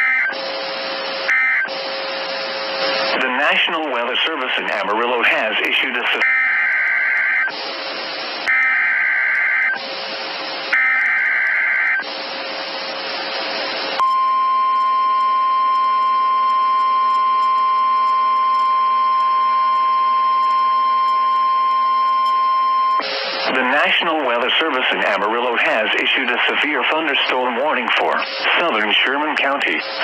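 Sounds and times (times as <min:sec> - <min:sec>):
radio hiss: 0:00.0 - 0:06.2, 0:07.2 - 0:08.8, 0:09.5 - 0:14.0, 0:23.0 - 0:30.0.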